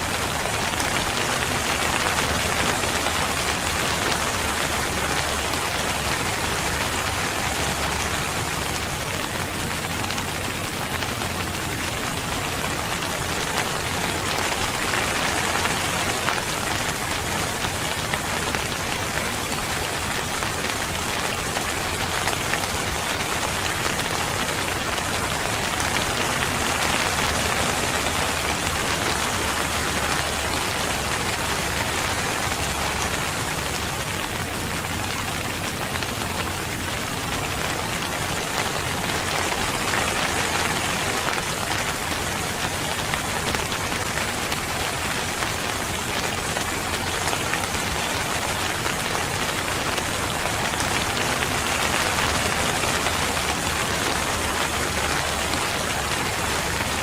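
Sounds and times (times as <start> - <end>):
steady rain: 0.0 - 57.0.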